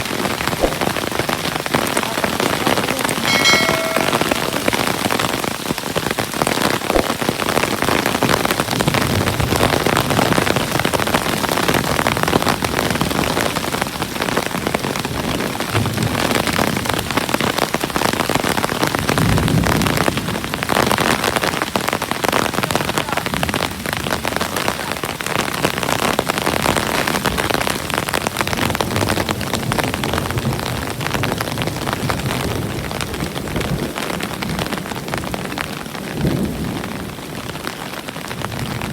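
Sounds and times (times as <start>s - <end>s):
short high tone: 3.2s - 5.2s.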